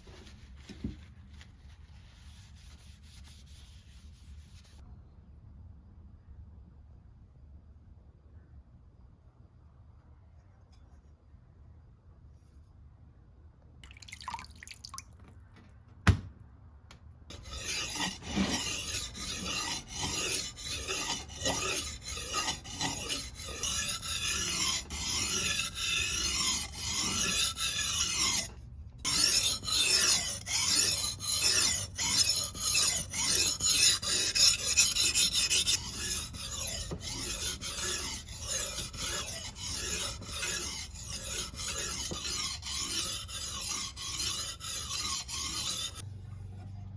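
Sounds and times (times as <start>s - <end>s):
knife blade scraping abrasive: 17.3s - 46.0s.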